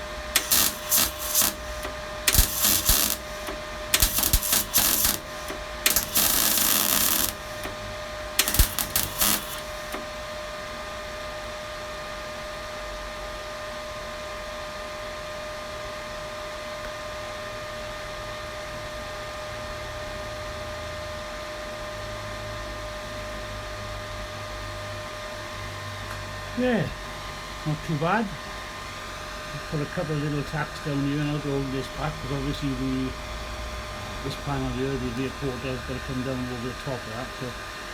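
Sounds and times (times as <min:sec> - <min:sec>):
welder crackling: 0:00.0 - 0:10.2
workshop hum: 0:00.0 - 0:11.2, 0:26.0 - 0:37.9
faint thin whine: 0:00.4 - 0:10.2.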